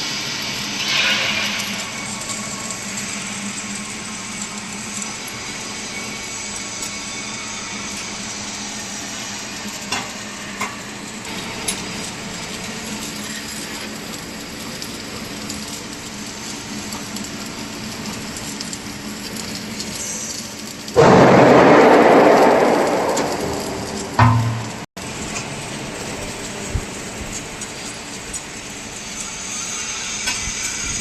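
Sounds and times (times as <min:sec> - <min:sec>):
welding arc sizzling crackle: 0:00.0 - 0:31.0
low hum: 0:21.0 - 0:24.9.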